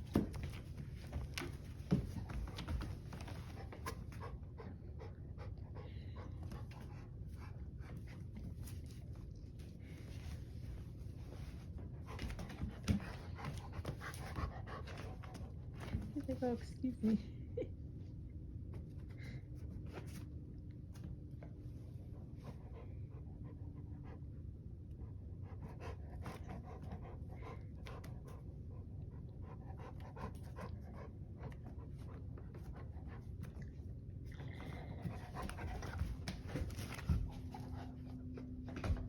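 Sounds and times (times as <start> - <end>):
dog panting: 1.9 - 8.2.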